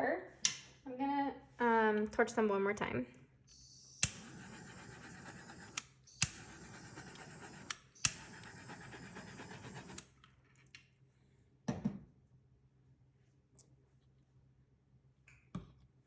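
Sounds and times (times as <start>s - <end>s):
handheld torch hissing: 3.5s - 10.1s
torch ignition click: 3.5s - 10.1s.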